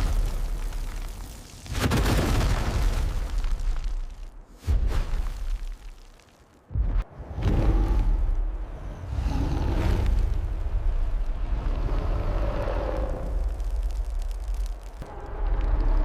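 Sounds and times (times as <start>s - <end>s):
deep low rumble: 6.8s - 16.0s.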